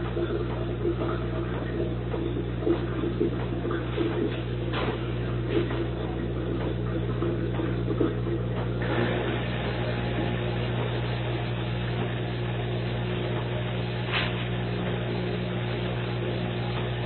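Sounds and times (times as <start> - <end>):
dishwasher motor hum: 0.0 - 17.0.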